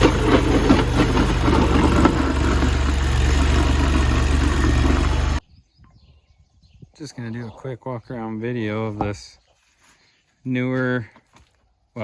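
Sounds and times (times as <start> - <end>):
loader engine running: 0.0 - 5.4
mechanical clatter: 0.0 - 5.4.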